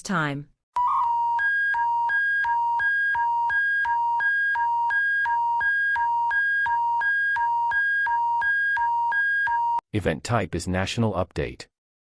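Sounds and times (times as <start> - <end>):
alternating high electronic beeps: 0.8 - 9.8.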